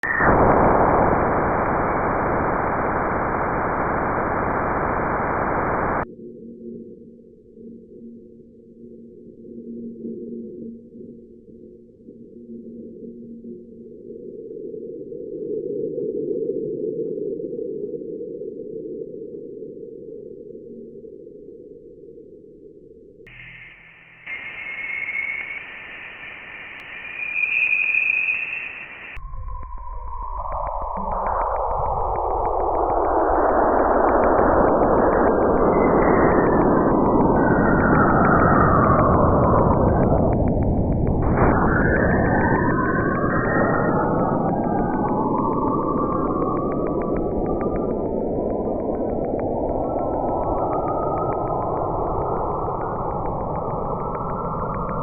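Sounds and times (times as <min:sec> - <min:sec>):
faint crackles: 0:00.0 - 0:06.0, 0:30.3 - 0:55.0
low muffled rushing noise: 0:00.2 - 0:06.0.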